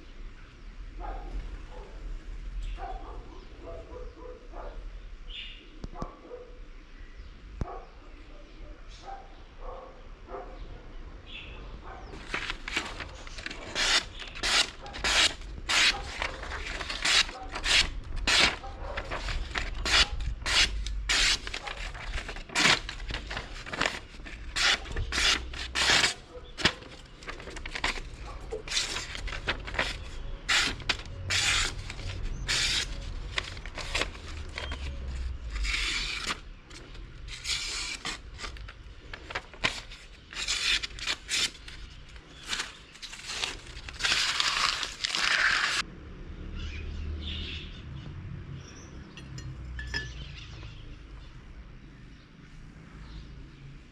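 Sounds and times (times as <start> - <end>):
file scraping over metal: 12.8 - 22.9, 24.5 - 26.2, 28.7 - 33.0.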